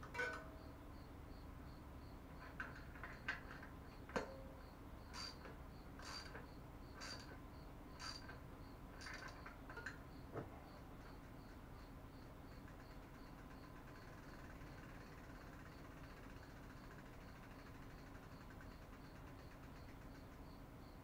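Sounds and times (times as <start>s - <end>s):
sharp knocks and clicks: 0.0s - 0.7s, 2.4s - 11.9s
cricket chirping: 0.0s - 21.0s.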